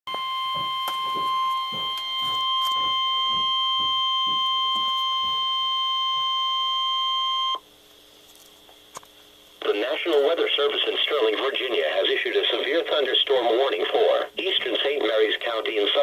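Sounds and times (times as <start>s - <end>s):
high-pitched alarm tone: 0.1s - 7.6s
faint receiver static crackles: 7.6s - 16.0s.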